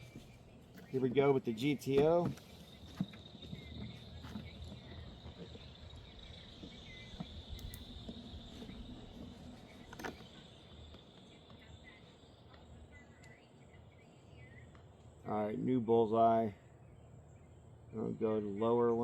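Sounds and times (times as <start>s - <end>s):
insects trilling: 0.0s - 19.0s
faint clicks: 7.5s - 8.2s, 12.5s - 13.4s.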